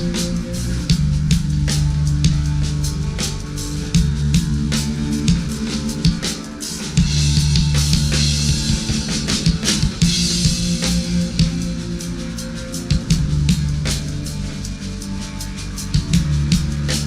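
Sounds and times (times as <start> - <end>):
drum kit with crashing cymbals: 0.0 - 17.0
sustained bass and guitar: 0.0 - 17.0.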